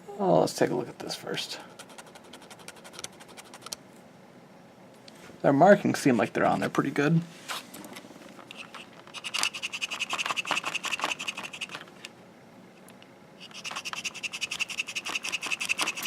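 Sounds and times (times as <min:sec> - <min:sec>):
fingernail scratching plastic: 0:01.8 - 0:03.8, 0:08.6 - 0:11.8, 0:13.4 - 0:16.0.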